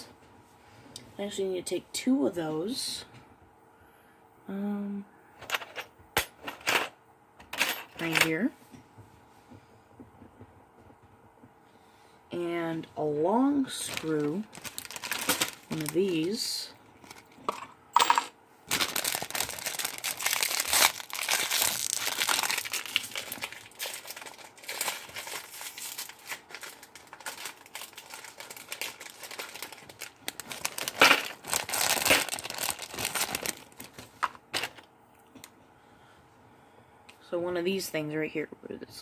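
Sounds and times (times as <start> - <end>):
plastic bag crinkling: 13.4 - 17.6, 18.7 - 34.9
hands rummaging small metal pieces: 13.9 - 16.3, 17.0 - 34.8.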